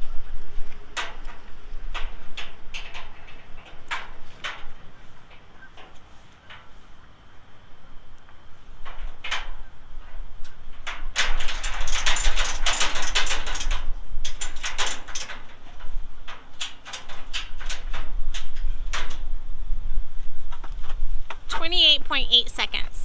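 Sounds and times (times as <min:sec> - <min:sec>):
steady low rumble: 0:17.9 - 0:23.0.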